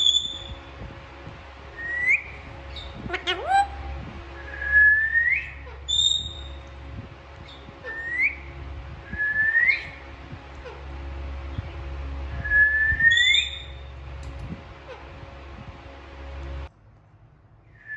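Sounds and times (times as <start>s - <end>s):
parakeet whistling: 0.0s - 0.6s, 1.8s - 6.6s, 7.4s - 8.5s, 9.2s - 10.0s, 12.5s - 13.8s.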